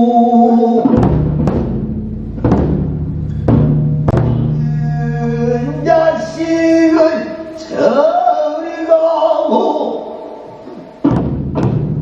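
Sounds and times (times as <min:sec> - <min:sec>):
large barrel drum strokes: 0:00.7 - 0:07.7, 0:10.6 - 0:12.0.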